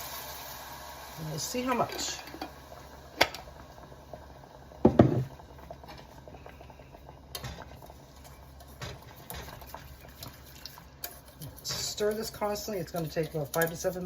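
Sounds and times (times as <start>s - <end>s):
utensil tapping a pan: 4.8s - 5.3s
sauce being stirred in a pan: 5.6s - 14.0s.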